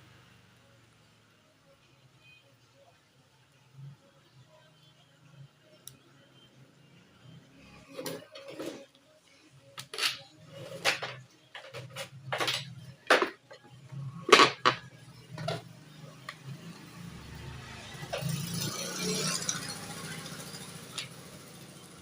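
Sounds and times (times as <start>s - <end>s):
hand tools clicking and clinking: 9.8s - 13.7s, 15.4s - 15.6s.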